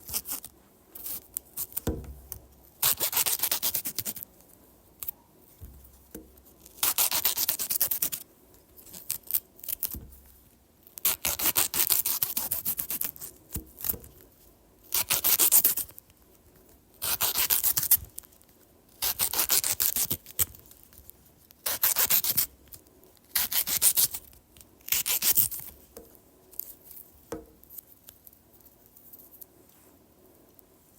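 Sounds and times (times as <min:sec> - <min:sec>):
light taps: 0:01.8 - 0:02.5
knife slicing banana: 0:23.3 - 0:24.3.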